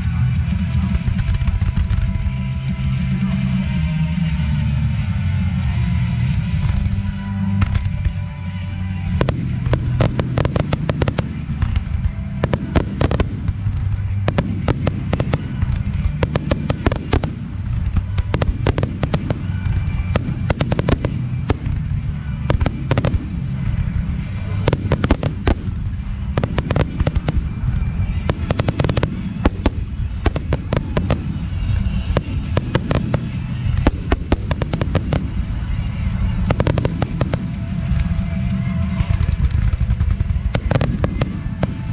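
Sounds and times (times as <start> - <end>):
fireworks bangs and crackles: 0.0 - 41.9
low rumble: 0.0 - 41.9.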